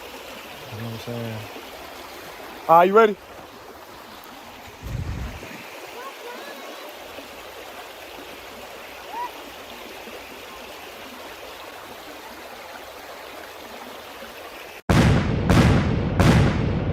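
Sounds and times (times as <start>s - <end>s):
waterfall rushing: 0.0s - 14.8s
deep booming hits: 14.9s - 16.9s.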